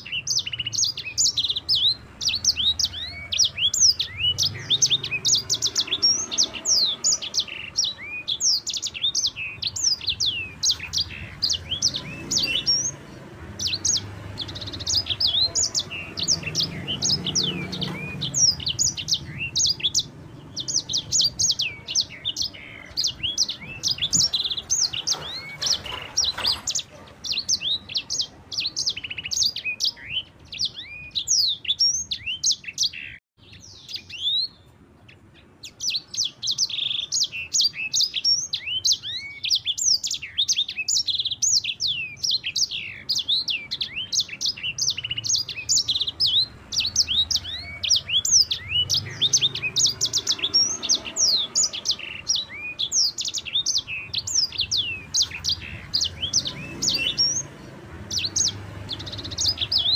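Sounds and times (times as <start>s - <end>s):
canary singing: 0.0s - 59.9s.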